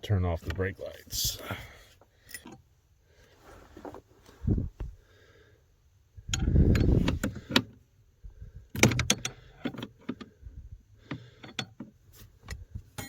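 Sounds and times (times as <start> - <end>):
handling rustle: 3.3 - 5.0.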